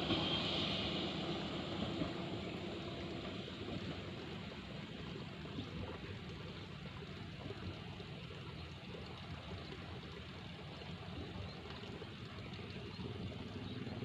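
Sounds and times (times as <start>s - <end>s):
train rumble: 0.0s - 6.3s.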